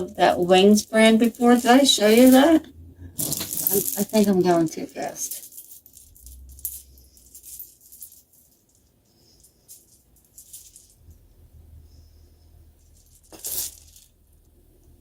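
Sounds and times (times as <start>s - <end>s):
beads clicking and rattling: 0.0s - 11.3s, 12.8s - 14.5s
rustling clatter of beads: 0.0s - 14.9s.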